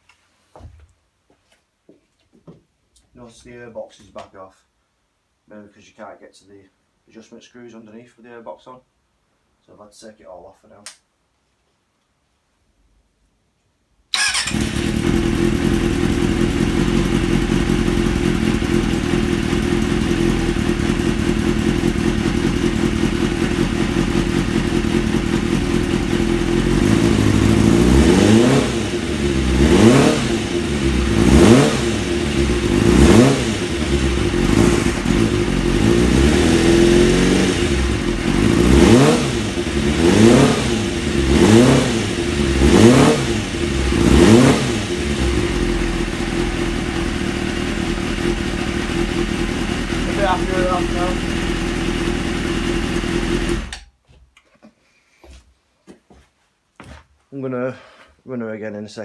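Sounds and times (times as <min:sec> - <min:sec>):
motorcycle engine idling and revving: 0:14.2 - 0:53.8.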